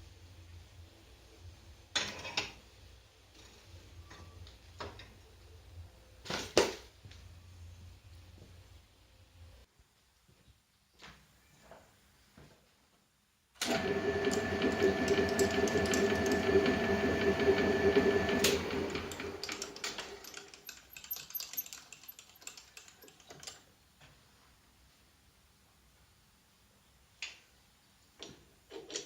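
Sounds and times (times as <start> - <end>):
belt sander motor humming: 13.6 - 20.2.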